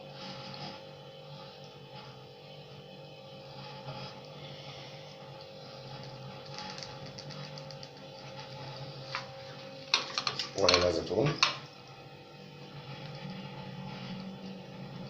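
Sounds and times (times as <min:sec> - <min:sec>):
low electrical hum: 0:00.0 - 0:15.0
light rapid ticks: 0:06.4 - 0:08.0.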